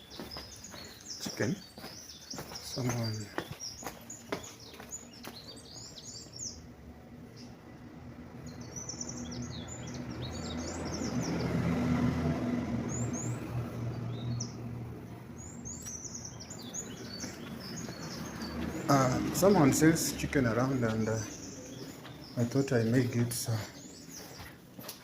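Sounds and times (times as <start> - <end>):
small birds chirping: 0.0 - 25.0
passing engine hum: 4.9 - 25.0.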